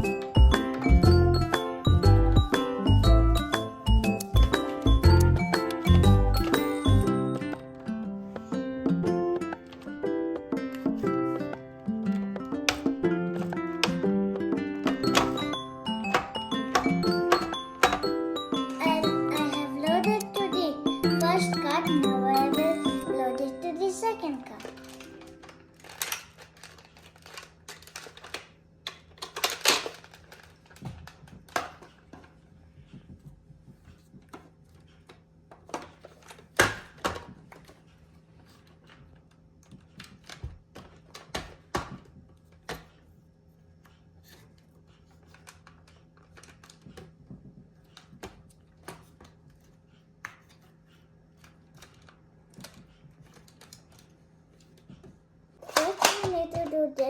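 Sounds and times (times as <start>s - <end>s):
toy shotgun clicking and clacking: 55.7s - 56.3s.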